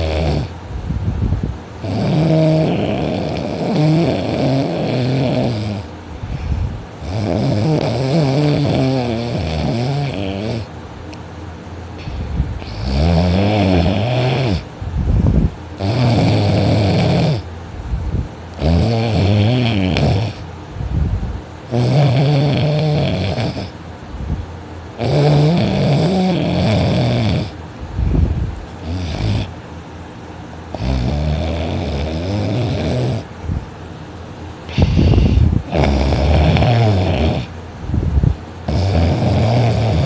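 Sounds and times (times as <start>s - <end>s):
person snoring loudly: 0.0s - 0.6s, 1.8s - 5.9s, 7.0s - 10.7s, 12.6s - 14.7s, 15.8s - 17.5s, 18.6s - 20.4s, 21.7s - 23.8s, 25.0s - 27.6s, 28.8s - 29.5s, 30.7s - 33.3s, 34.7s - 37.5s, 38.7s - 40.0s.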